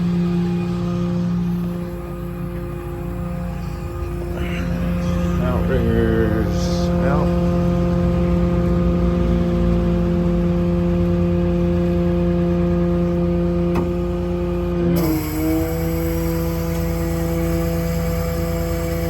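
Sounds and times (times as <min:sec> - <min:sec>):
diesel engine idling: 0:00.0 - 0:19.0
hydraulic pump whine: 0:00.0 - 0:19.0.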